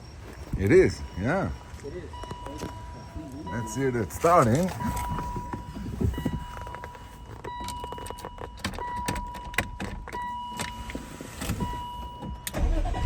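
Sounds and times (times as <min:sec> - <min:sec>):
keys rattling in ignition: 0:00.1 - 0:13.0
electronic warning tone: 0:00.6 - 0:08.2
starter turning engine over: 0:12.4 - 0:13.0.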